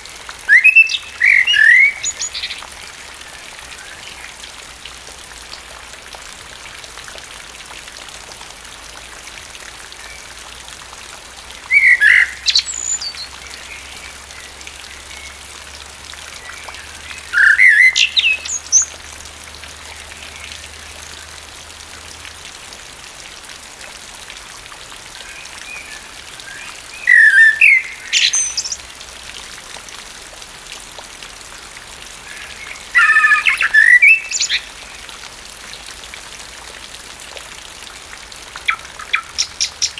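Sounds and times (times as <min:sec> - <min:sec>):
steady rain falling: 0:00.0 - 0:39.9
blackbird singing warbling phrases: 0:00.4 - 0:02.7, 0:11.7 - 0:15.4, 0:16.4 - 0:19.0, 0:25.2 - 0:28.8, 0:32.3 - 0:34.9, 0:38.6 - 0:39.9.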